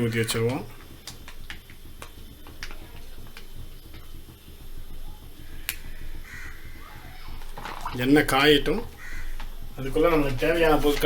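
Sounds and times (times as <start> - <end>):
low steady hum: 0.0 - 11.0
sharp clicks and light taps: 0.3 - 4.3, 5.6 - 6.0.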